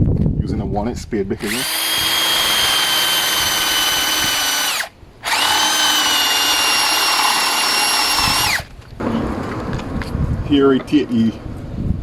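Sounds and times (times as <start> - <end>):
power drill whining into wood: 1.4 - 8.7.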